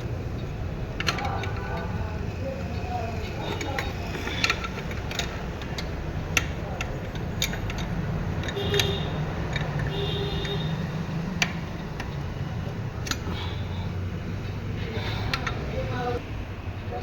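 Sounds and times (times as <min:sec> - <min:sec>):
spanner clicking on bolt: 0:00.4 - 0:02.2, 0:02.8 - 0:12.3, 0:13.0 - 0:13.3, 0:15.3 - 0:15.7.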